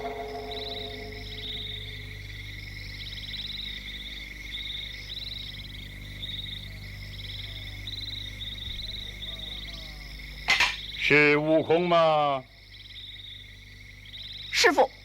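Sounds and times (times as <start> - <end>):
steady high drone: 0.0 - 2.8
frogs trilling: 0.0 - 15.0.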